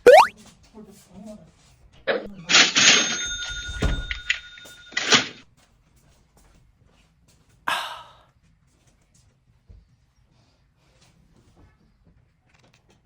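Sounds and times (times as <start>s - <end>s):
bell-like ringing: 2.4s - 5.4s.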